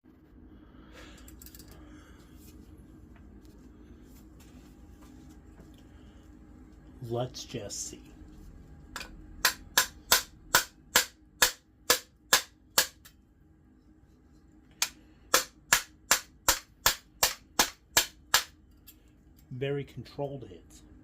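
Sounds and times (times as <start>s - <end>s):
hammer striking steel: 9.0s - 13.1s, 14.8s - 18.6s.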